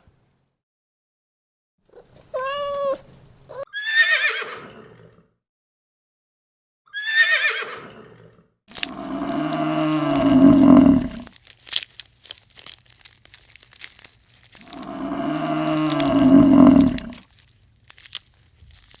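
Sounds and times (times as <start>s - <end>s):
cat meowing: 2.0s - 3.6s
horse whinnying: 2.4s - 4.8s, 6.9s - 7.9s, 8.8s - 11.3s, 14.6s - 17.2s
low rough animal sound: 8.7s - 11.4s, 13.8s - 19.0s.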